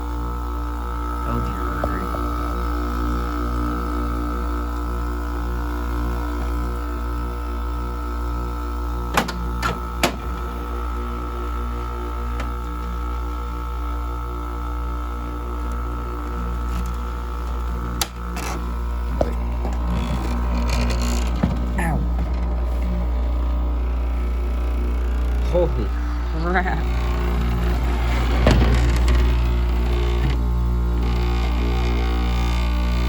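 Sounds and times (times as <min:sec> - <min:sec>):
air conditioner humming: 0:00.0 - 0:33.0.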